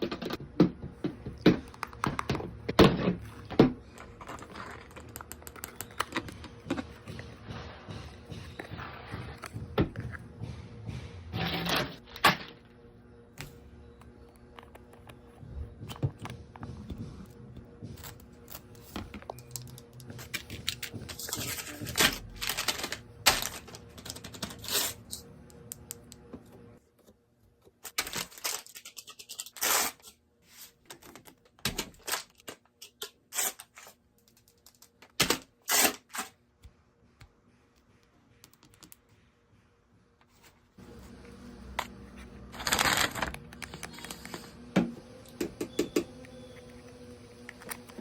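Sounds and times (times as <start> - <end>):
packaging unwrapped by hand: 42.5 - 44.5.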